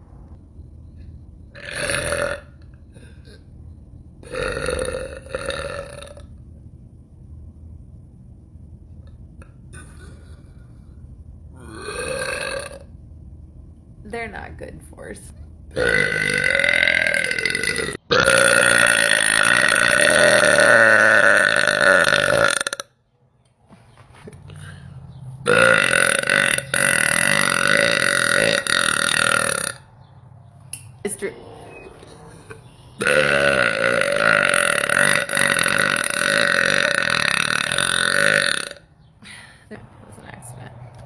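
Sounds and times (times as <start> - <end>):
woman burping: 9.7 - 10.6, 11.6 - 12.9, 15.8 - 22.8, 25.5 - 29.8, 33.0 - 39.4.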